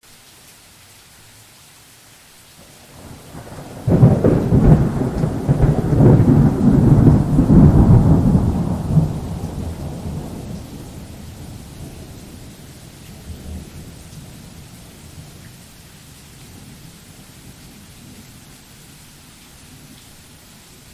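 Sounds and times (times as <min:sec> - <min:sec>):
steady rain: 0:00.0 - 0:20.9
thunder clap and rumbling: 0:02.9 - 0:15.4.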